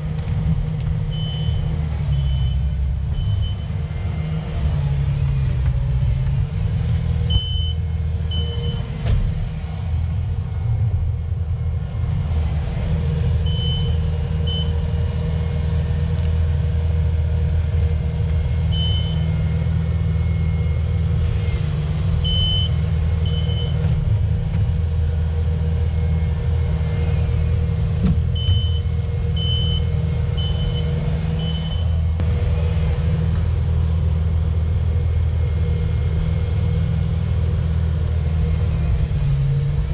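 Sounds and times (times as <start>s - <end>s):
diesel engine running under load: 0.0s - 39.9s
back-up alarm beeps: 1.1s - 3.7s, 7.3s - 8.8s, 18.7s - 19.2s, 22.2s - 23.8s, 28.4s - 32.0s.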